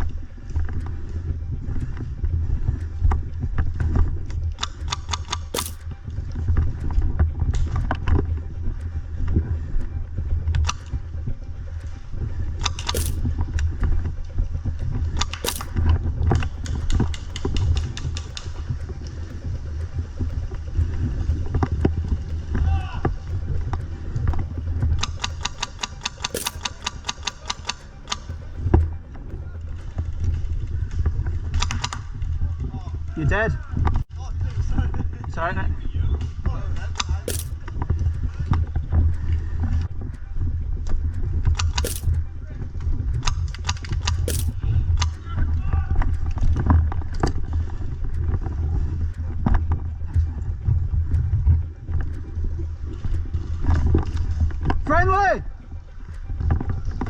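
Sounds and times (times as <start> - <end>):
sharp clicks: 4.6 - 6.1, 12.6 - 13.8, 14.9 - 30.4, 37.0 - 38.0, 41.5 - 42.3, 43.2 - 45.2
airsoft rifle firing: 5.6 - 5.8, 12.9 - 13.2, 15.4 - 15.7, 26.2 - 26.9, 37.3 - 37.6, 41.8 - 42.1, 44.3 - 44.5.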